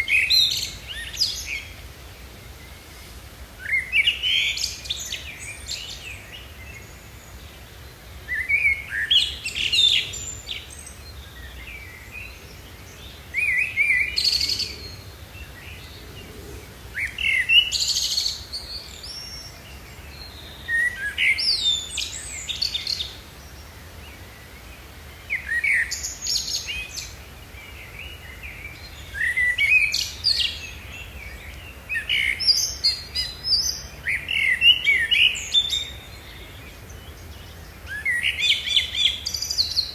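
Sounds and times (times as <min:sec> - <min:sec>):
birds chirping and singing: 0:08.3 - 0:23.1.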